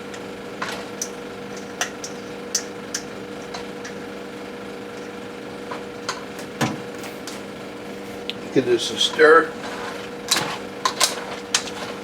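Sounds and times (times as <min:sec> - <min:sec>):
steady hum: 0:00.0 - 0:12.0.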